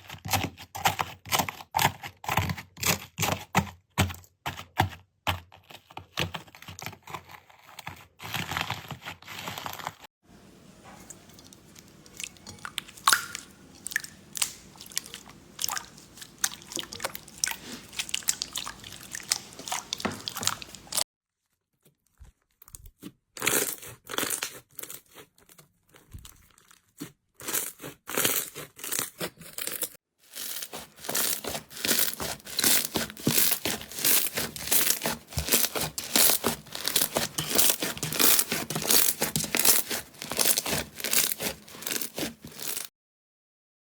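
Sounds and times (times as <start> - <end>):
slime crackling and popping: 12.4 - 15.1, 30.3 - 42.8.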